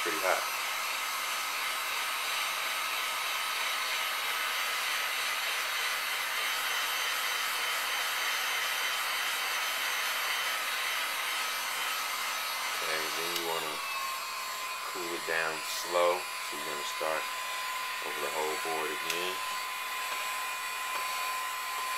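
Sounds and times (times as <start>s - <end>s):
heat gun blowing hot air: 0.0s - 21.9s.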